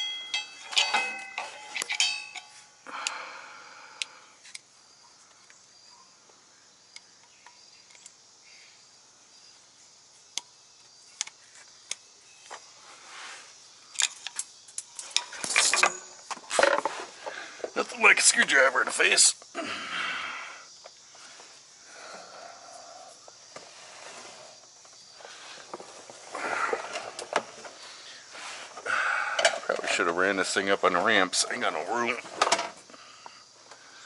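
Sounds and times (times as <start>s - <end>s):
metal scraping and knocking: 0.0s - 2.6s
metal tools clinking: 0.0s - 2.8s.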